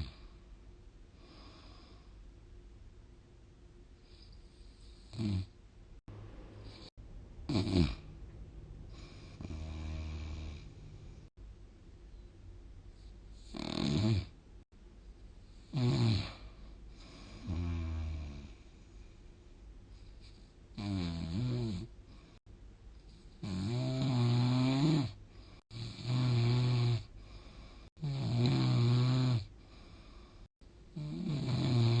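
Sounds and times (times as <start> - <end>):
quiet breathing: 0.0 - 2.4, 3.9 - 5.2, 8.8 - 11.4, 12.1 - 13.6, 15.1 - 20.8, 21.8 - 23.4, 25.1 - 25.8, 27.0 - 28.0, 29.4 - 31.1
person snoring: 7.5 - 8.1, 8.9 - 11.3, 13.4 - 14.3, 15.6 - 18.6, 20.8 - 21.9, 23.4 - 27.1, 28.0 - 30.0, 31.0 - 32.0.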